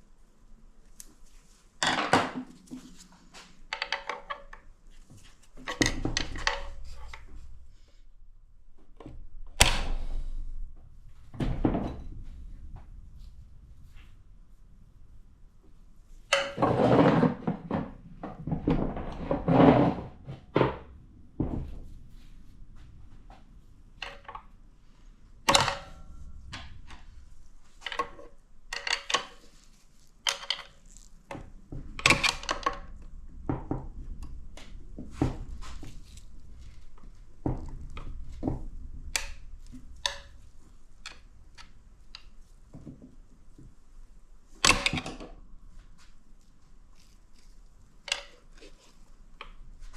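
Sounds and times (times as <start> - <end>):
metal parts clunking and clattering: 3.7 - 4.7, 5.6 - 7.3, 25.5 - 31.0.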